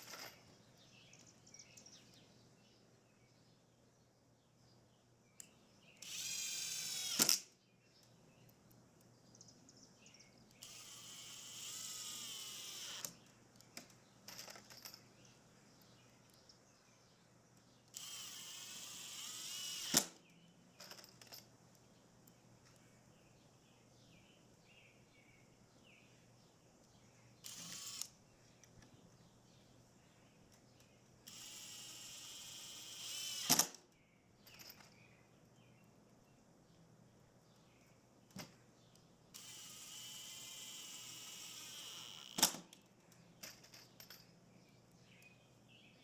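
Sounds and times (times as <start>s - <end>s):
power drill running: 6.0s - 7.4s, 10.6s - 13.2s, 17.9s - 20.2s, 27.4s - 28.1s, 31.3s - 33.7s, 39.4s - 42.5s
handling knocks and clicks: 20.0s - 21.9s.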